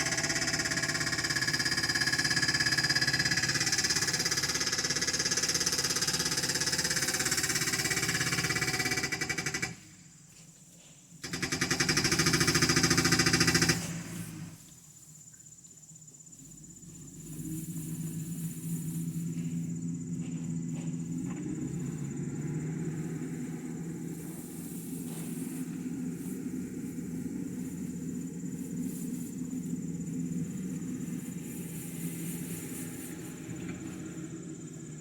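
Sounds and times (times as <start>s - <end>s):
fence post driver hammering: 0.0s - 9.8s.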